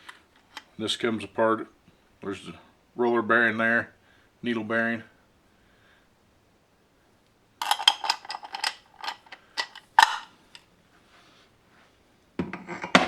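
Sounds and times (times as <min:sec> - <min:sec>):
steel parts clinking and rattling: 0:00.0 - 0:00.8, 0:07.6 - 0:10.7.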